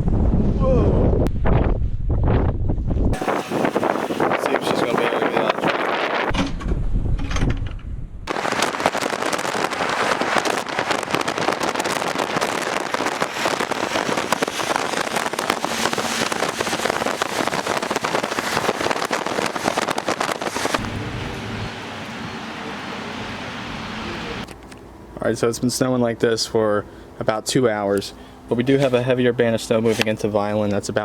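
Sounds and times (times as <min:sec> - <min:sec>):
low rumble: 0:00.0 - 0:24.5
hiss of wind and falling snow: 0:03.2 - 0:06.2, 0:08.3 - 0:24.5.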